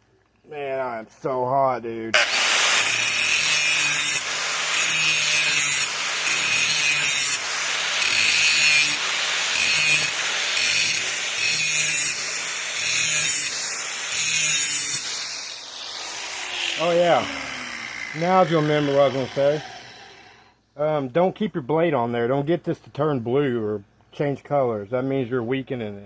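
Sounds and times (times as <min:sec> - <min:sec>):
power grinder sharpening metal blade: 0:02.2 - 0:20.6.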